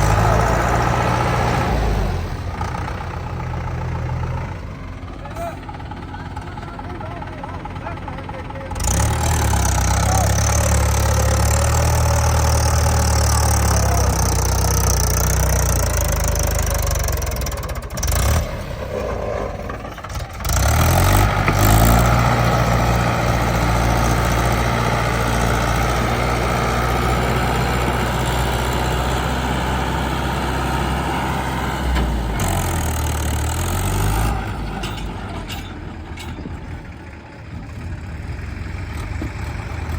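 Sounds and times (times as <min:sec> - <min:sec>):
diesel engines revving: 0:00.0 - 0:39.9.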